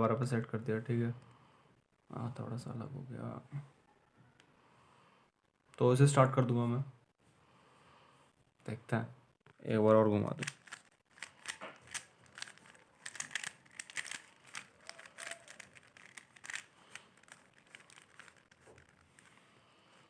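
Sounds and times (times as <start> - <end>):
plastic puzzle cube clicking: 10.4 - 19.4.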